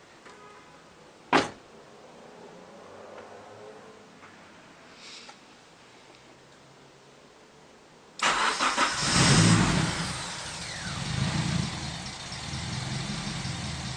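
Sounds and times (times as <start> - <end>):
car engine idling: 8.2 - 13.9
engine revving: 8.2 - 13.9.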